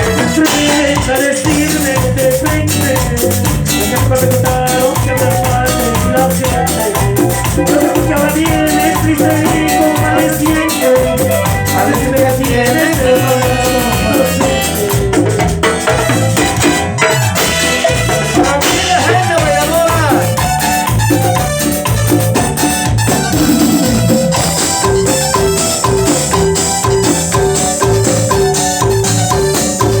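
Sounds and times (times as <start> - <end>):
fast percussion beat: 0.0 - 30.0
sustained melodic lead: 17.5 - 30.0.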